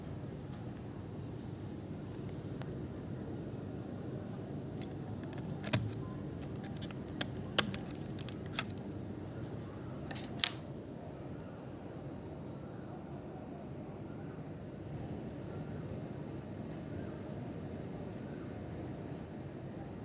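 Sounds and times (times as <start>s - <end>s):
steady low hum: 0.0s - 20.0s
clicks and taps handling laptop: 4.8s - 10.6s.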